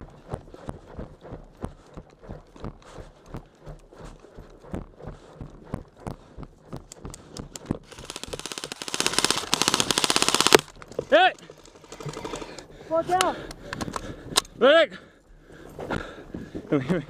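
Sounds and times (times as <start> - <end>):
rifle full-auto fire: 7.9 - 10.7.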